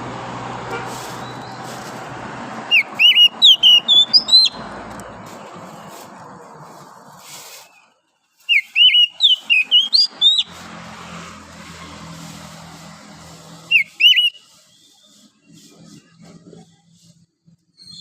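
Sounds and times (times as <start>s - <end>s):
bird singing slurred whistles: 2.7s - 4.6s, 8.5s - 10.5s, 13.7s - 14.9s, 17.7s - 18.0s.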